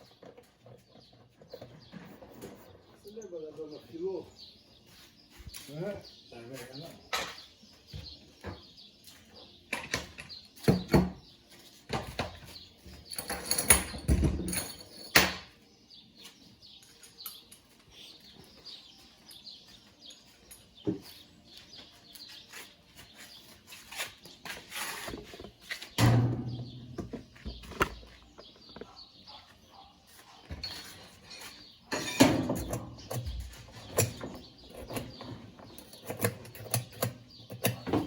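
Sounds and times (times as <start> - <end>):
birds chirping: 0.0 - 38.0
knocks and clatter of metal parts: 11.9 - 15.6, 25.0 - 29.0, 30.5 - 38.0.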